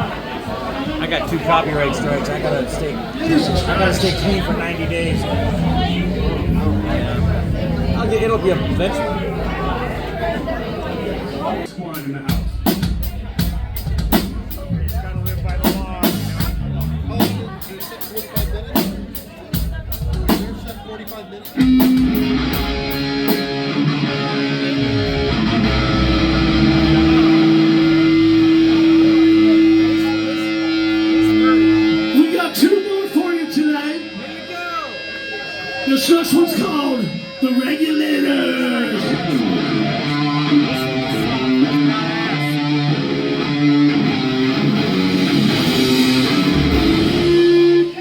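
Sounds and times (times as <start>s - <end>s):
electric guitar noodling: 0.8s - 11.7s, 13.8s - 17.7s, 21.6s - 48.0s
bass guitar: 3.0s - 11.0s, 12.4s - 17.7s, 21.6s - 32.2s, 39.0s - 48.0s
electric guitar sustained note: 3.2s - 10.2s, 21.6s - 32.2s.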